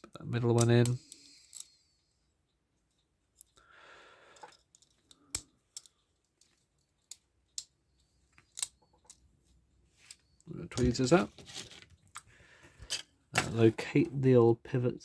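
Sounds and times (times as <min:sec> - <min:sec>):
small metal parts clicking: 0:00.5 - 0:03.6, 0:04.2 - 0:09.3.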